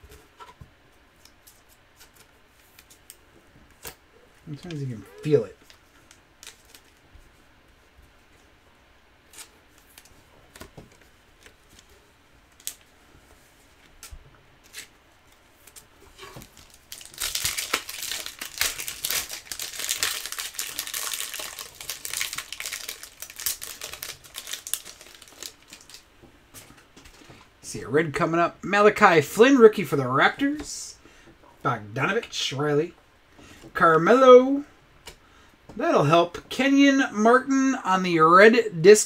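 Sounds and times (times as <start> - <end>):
wrapper crinkling and tearing: 5.4 - 7.0, 15.6 - 26.0.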